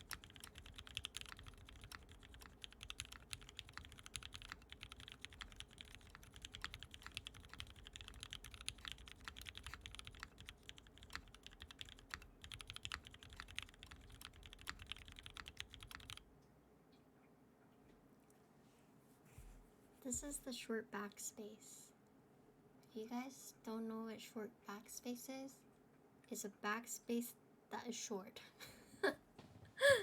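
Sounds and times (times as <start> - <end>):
typing on mechanical keyboard: 0.0 - 16.2.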